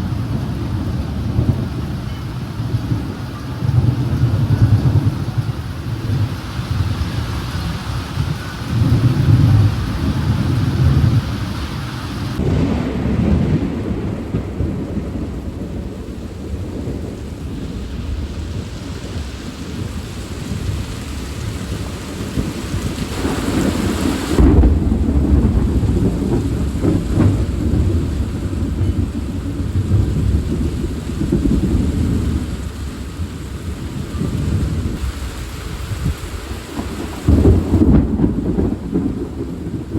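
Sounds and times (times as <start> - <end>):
steady rain: 0.0 - 39.9
thunder rumbling: 0.0 - 39.9.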